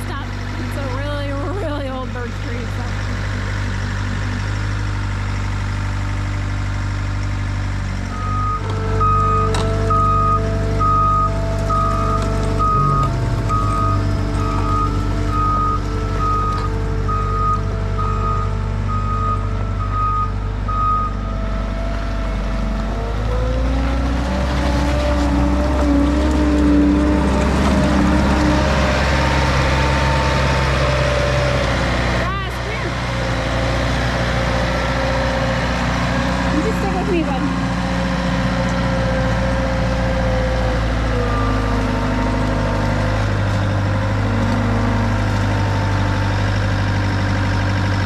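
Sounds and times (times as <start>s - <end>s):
skid steer engine running: 0.0s - 48.0s
reversing alarm beeping: 8.1s - 21.4s, 41.2s - 42.1s.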